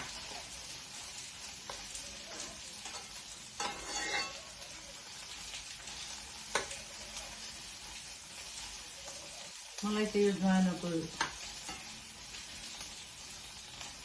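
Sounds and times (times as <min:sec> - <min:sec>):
garlic sizzling in hot ghee: 0:00.0 - 0:14.0
utensil scraping pan: 0:02.3 - 0:04.4.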